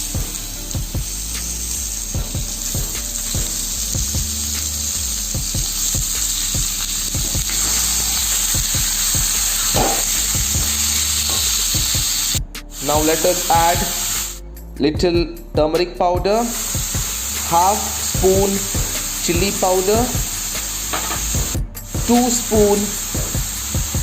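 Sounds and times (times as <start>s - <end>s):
chicken sizzling in hot oil: 0.0s - 14.4s, 16.4s - 24.0s
oil popping: 0.1s - 12.9s.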